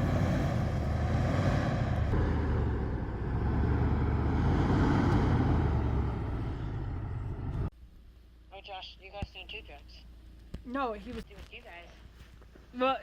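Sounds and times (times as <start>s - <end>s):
road and wind noise: 0.0s - 7.8s
motor vehicle engine rumble: 0.0s - 8.5s.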